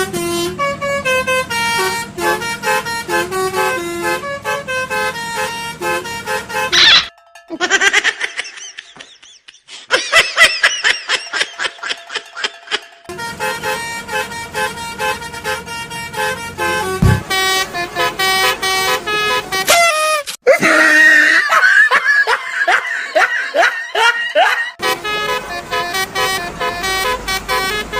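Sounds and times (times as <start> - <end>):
multi-tone bus horn tune: 0.0 - 7.2, 12.3 - 20.4, 24.1 - 27.9.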